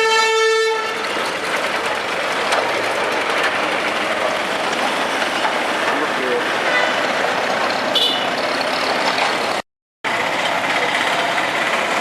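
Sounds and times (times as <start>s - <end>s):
train horn blast: 0.0s - 1.0s, 8.0s - 8.4s
moving train running noise: 0.0s - 12.0s.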